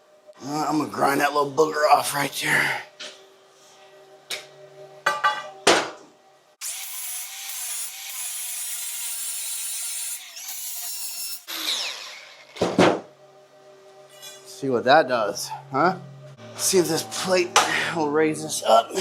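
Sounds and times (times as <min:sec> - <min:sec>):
angle grinder grinding steel: 0:06.6 - 0:12.6.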